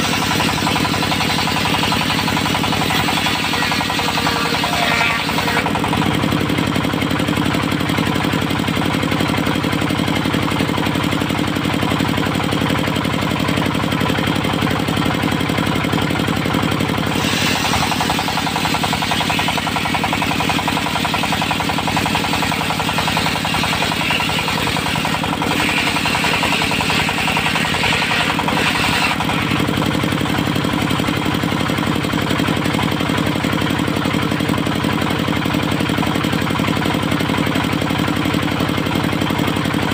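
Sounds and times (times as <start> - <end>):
saw blade rasping through wood: 0.0 - 6.5, 16.8 - 30.3
sawmill engine running: 0.0 - 39.9.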